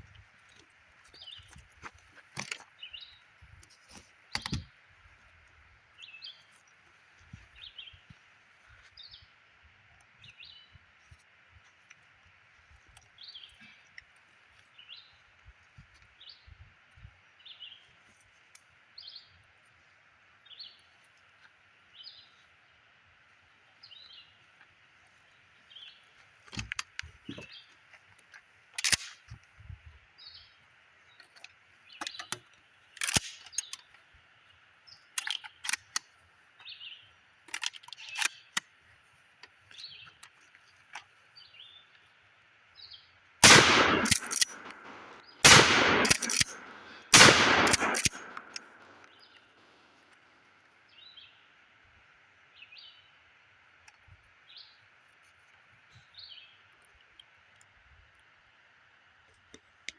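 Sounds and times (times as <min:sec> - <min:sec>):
sharp clicks and knocks: 0:33.0 - 0:33.4, 0:43.4 - 0:48.9
shotgun blasts: 0:43.4 - 0:48.9.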